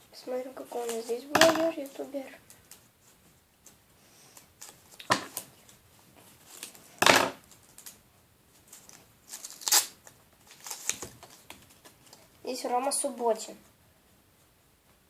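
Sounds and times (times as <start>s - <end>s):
paper rustling and crinkling: 4.4s - 12.4s.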